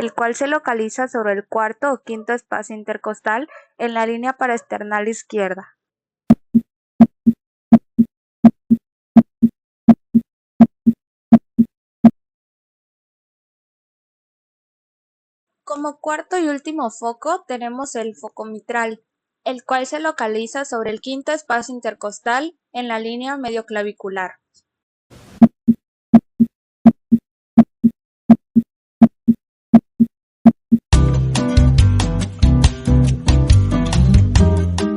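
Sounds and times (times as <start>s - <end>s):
heartbeat lub-dub thumps: 6.3s - 12.2s, 25.4s - 30.9s.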